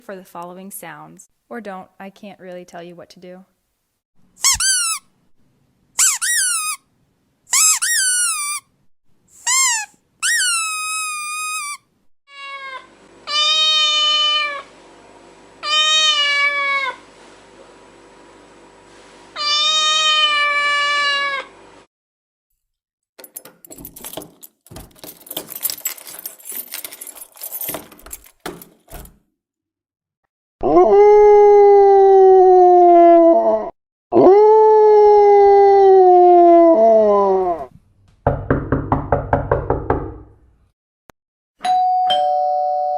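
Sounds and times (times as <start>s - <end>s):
cat meowing: 12.3s - 14.6s, 15.6s - 17.0s, 19.4s - 21.5s
long falling howls: 30.6s - 37.7s.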